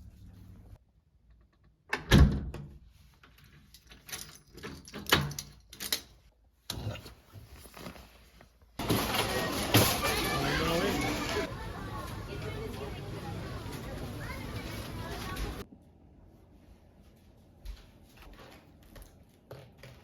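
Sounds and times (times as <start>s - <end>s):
handling noise: 8.8s - 15.6s
busy place background noise: 8.8s - 15.7s.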